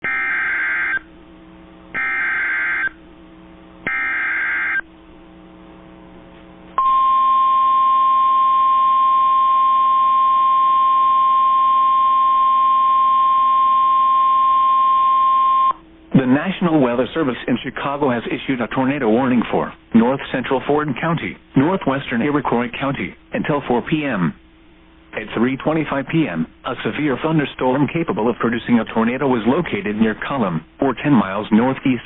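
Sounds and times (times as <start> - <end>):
high warning alarm tone: 0.0 - 1.1, 1.9 - 3.0, 3.8 - 4.8, 6.8 - 15.8.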